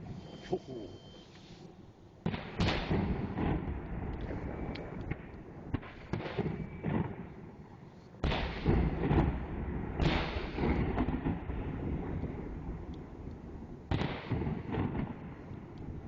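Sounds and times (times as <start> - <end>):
firework cracks: 2.2 - 7.3, 8.2 - 13.1, 13.9 - 16.0
firework booms echoing: 2.2 - 7.4, 8.2 - 13.2, 13.9 - 16.0.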